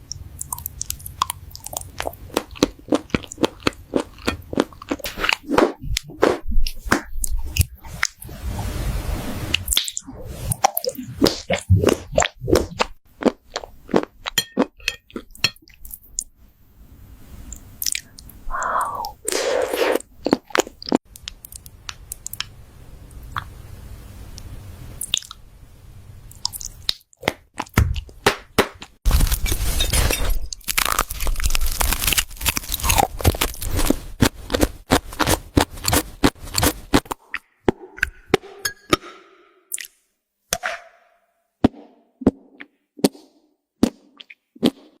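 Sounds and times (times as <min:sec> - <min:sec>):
crunchy chewing: 0:00.4 - 0:05.8, 0:30.5 - 0:37.2.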